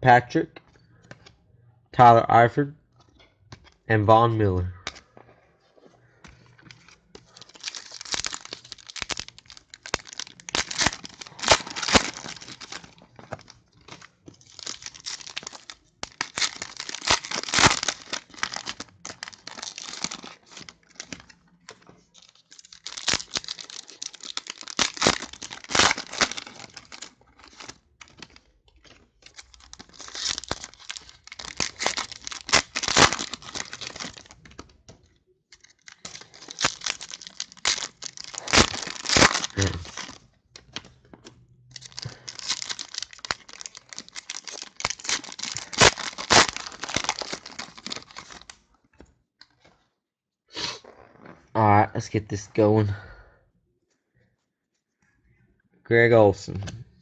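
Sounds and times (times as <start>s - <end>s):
card wrappers torn and crinkled: 6.3s - 34.8s, 35.6s - 48.6s.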